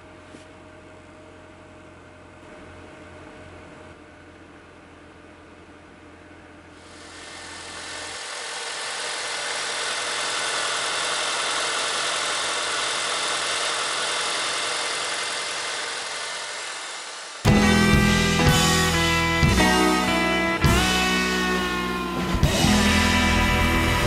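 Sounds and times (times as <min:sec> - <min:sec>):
car engine whirring: 0:06.6 - 0:24.0.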